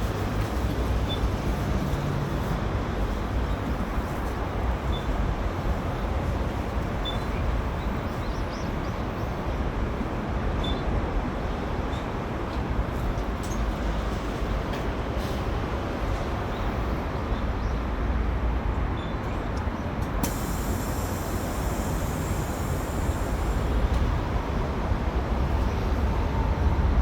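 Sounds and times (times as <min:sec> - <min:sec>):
road and traffic rumble: 0:00.0 - 0:27.0.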